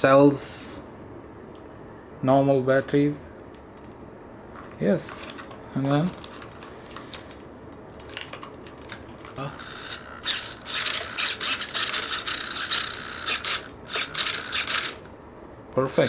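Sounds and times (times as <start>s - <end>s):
dry rasping and rubbing: 9.4s - 15.1s.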